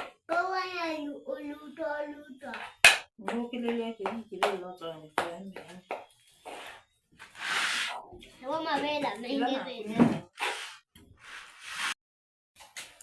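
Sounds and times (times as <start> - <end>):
sharp hand claps: 2.8 - 4.6.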